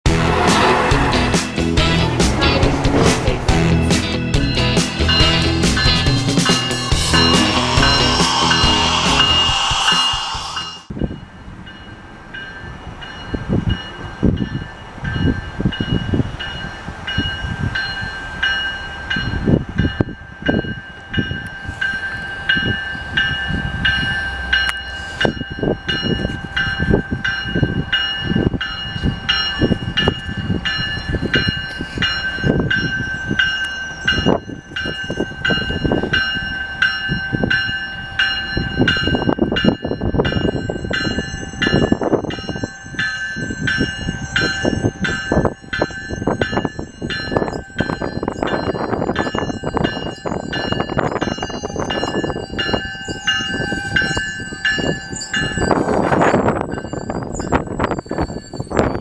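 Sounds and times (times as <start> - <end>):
train rumbling past: 0.1 - 58.3
crossing bell ringing: 0.2 - 59.0
high wheel squeal: 4.9 - 10.9, 40.9 - 59.0
wind buffeting microphone: 5.0 - 59.0.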